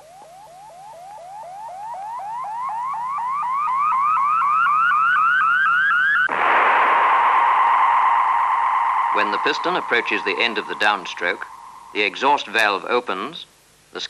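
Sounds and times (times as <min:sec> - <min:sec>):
rising electronic chirps: 0:00.0 - 0:12.6
steady hiss: 0:06.3 - 0:14.0.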